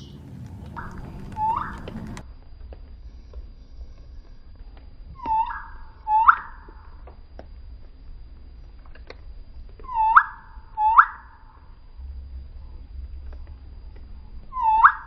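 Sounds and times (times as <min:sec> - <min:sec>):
quail whistled calls: 0:00.0 - 0:02.2, 0:05.2 - 0:06.9, 0:09.8 - 0:11.4, 0:14.5 - 0:15.0.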